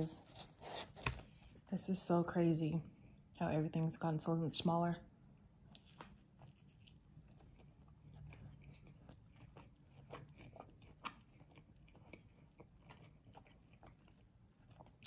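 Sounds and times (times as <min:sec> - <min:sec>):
person chewing food: 0:05.6 - 0:15.0.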